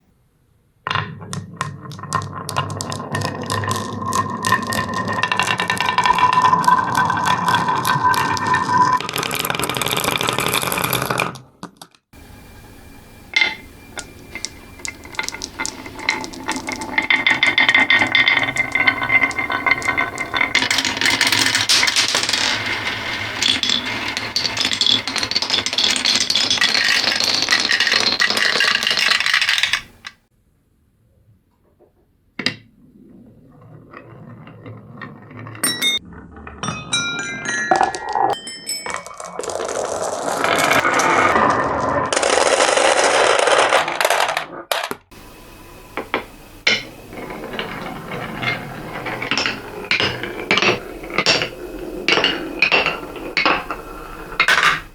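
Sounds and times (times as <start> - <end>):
marbles rattling down wooden run: 1.8 - 11.2, 13.3 - 30.2, 37.7 - 54.9
bright ringing tones: 35.6 - 36.0, 36.6 - 39.4.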